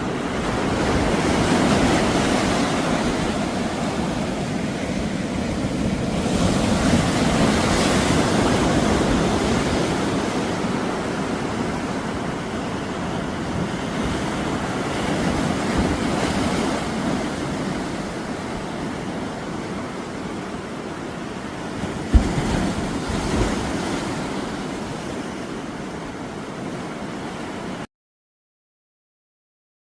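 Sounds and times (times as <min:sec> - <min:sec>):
wind buffeting microphone: 0:00.0 - 0:20.2
sea waves breaking: 0:00.0 - 0:27.9.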